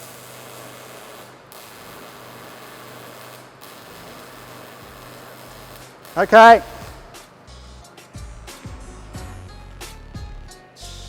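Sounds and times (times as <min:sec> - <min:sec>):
welding torch arc hissing: 0:00.0 - 0:07.2.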